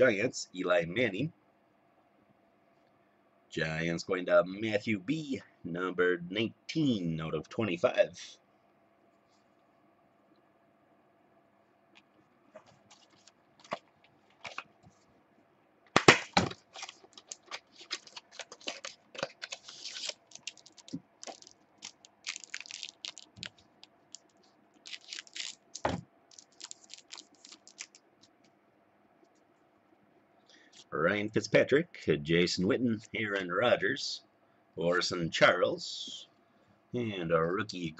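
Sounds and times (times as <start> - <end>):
cards and wrapper crackling: 12.8 - 14.7, 16.0 - 28.5.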